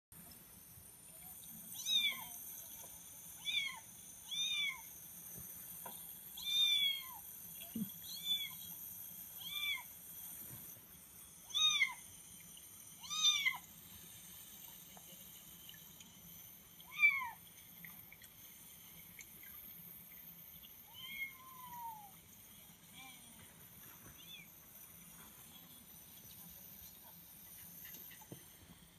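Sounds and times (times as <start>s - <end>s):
recorded cat meows: 20.9s - 22.1s.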